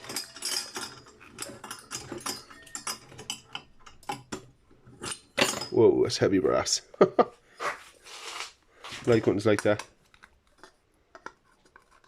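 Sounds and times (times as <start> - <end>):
metal parts clinking and rattling: 0.0 - 5.9.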